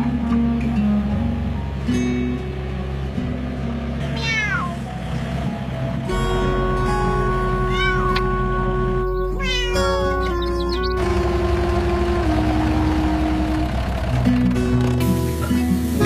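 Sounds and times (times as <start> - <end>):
background music with held notes: 0.0 - 16.0
cat meowing: 4.1 - 4.9, 7.6 - 8.5, 9.1 - 10.4.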